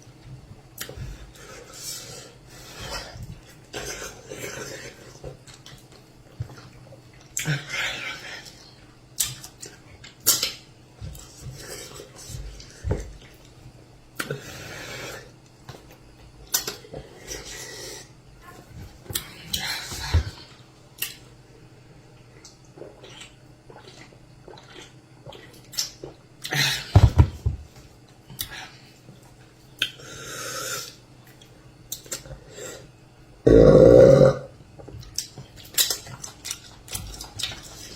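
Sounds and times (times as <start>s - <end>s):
chewing and mouth sounds: 22.2s - 26.6s, 34.7s - 37.9s.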